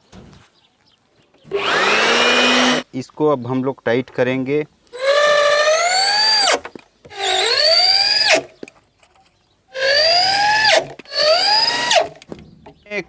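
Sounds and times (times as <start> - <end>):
electric drill motor whine: 1.5 - 2.8, 5.0 - 8.5, 9.8 - 12.2.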